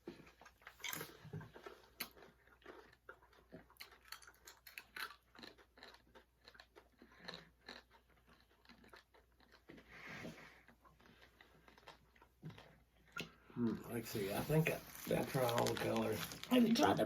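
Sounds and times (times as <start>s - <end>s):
crunching and chewing candy: 0.0s - 17.0s.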